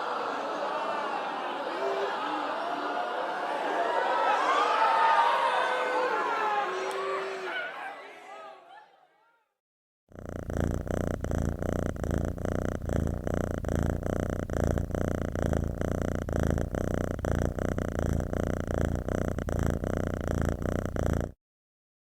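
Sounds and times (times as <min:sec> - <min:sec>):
cat purring: 0:10.1 - 0:21.4.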